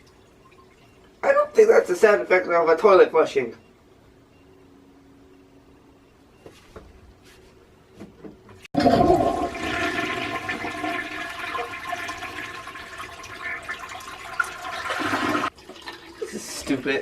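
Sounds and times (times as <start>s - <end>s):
toilet flushing: 8.8s - 17.0s.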